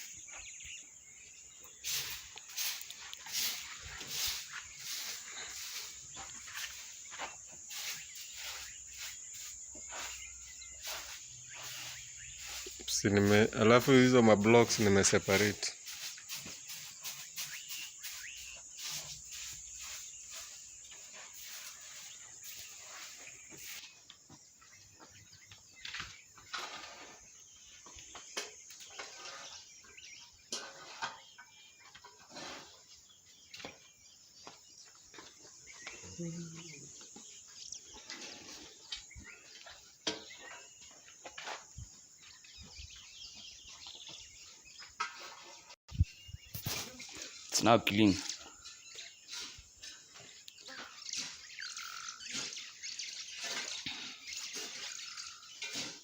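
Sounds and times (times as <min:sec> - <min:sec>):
faint bird chirp: 0:00.0 - 0:56.0
broom sweeping a floor: 0:01.7 - 0:24.0, 0:46.5 - 0:47.5, 0:49.3 - 0:56.0.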